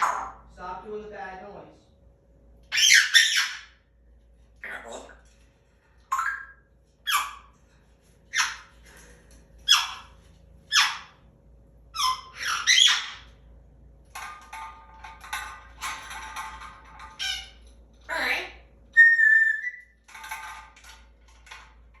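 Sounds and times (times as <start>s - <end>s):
parrot screeching: 0.0s - 0.4s, 2.7s - 3.8s, 4.6s - 5.2s, 6.1s - 7.6s, 8.3s - 8.8s, 9.6s - 11.2s, 11.9s - 13.4s, 17.0s - 20.5s
parrot whistling call: 19.0s - 19.9s.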